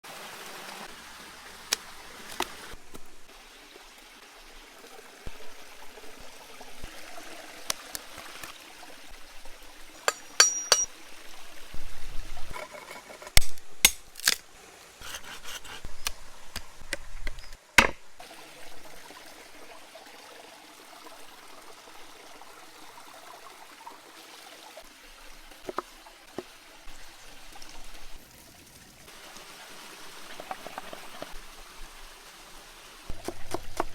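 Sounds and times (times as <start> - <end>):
utensils clicking and knocking: 10.0 - 10.9
liquid pouring: 18.2 - 31.5.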